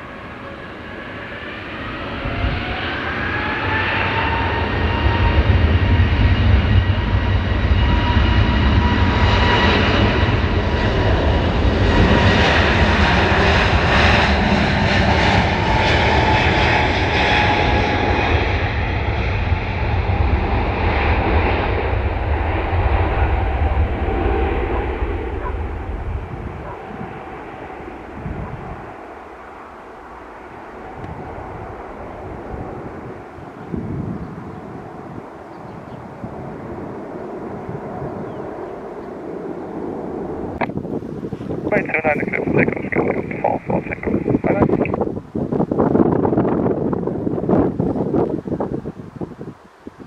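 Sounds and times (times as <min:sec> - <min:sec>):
jet engines rumbling and whining: 0:00.0 - 0:50.0.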